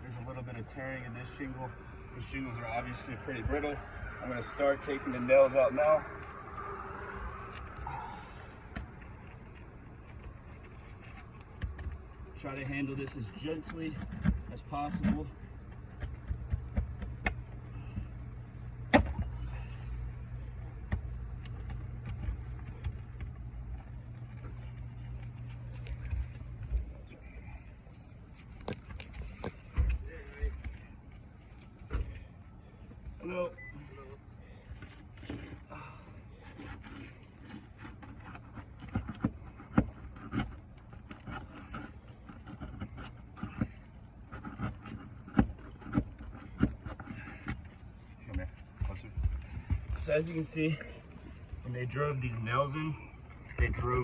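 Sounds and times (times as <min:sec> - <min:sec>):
low steady rumble: 0:00.0 - 0:54.0
steady low hum: 0:00.0 - 0:54.0
hand tool clicking and scraping shingles: 0:36.4 - 0:47.9.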